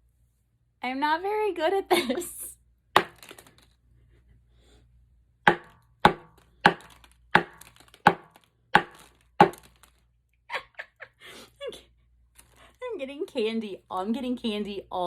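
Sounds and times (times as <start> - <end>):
mallet striking chocolate shell: 3.0 - 3.3, 5.5 - 9.7.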